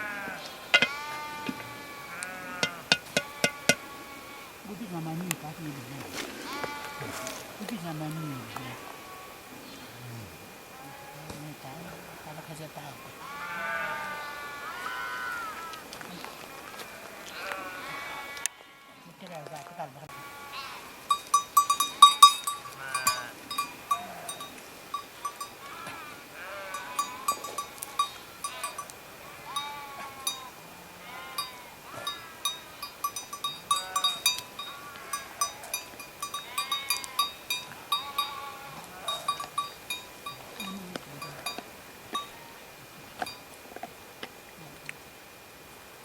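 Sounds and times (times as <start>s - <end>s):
sheep bleating: 0.0s - 4.5s, 6.5s - 7.4s, 13.2s - 15.8s, 16.6s - 20.9s, 22.0s - 24.5s, 25.6s - 32.5s, 33.7s - 39.4s
small metal bells clinking: 0.8s - 1.0s, 21.1s - 25.7s, 26.7s - 28.9s, 29.5s - 30.5s, 31.3s - 41.6s.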